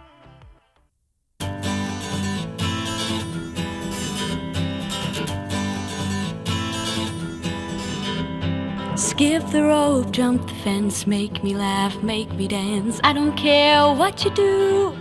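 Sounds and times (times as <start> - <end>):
strummed acoustic guitar: 1.4 - 15.0.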